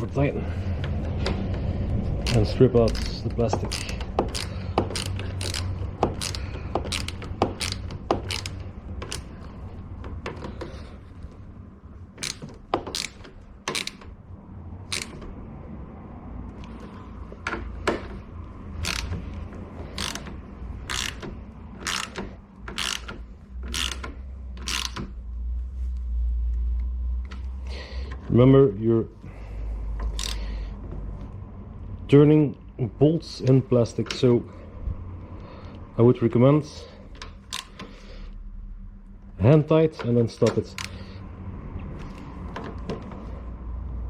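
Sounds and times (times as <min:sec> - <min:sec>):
hand ratchet clicking: 0:02.1 - 0:10.8, 0:12.2 - 0:14.2, 0:14.8 - 0:15.4, 0:17.8 - 0:25.2, 0:30.0 - 0:30.6, 0:37.4 - 0:38.0, 0:40.4 - 0:41.1.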